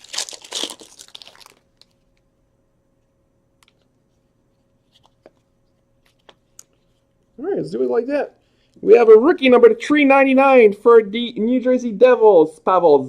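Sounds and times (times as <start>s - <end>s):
wrapper tearing and crinkling: 0.0s - 2.1s.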